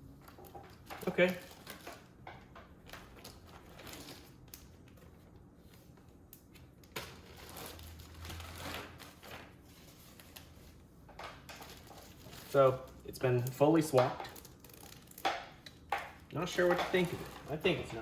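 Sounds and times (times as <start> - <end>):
packaging rustling: 2.8 - 10.8.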